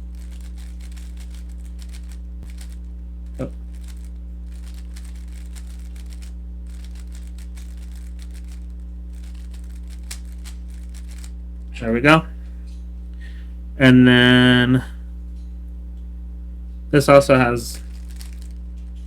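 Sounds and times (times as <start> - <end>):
puzzle cube clicking and rattling: 0.0 - 11.3, 17.8 - 18.6
low electrical hum: 0.0 - 19.0.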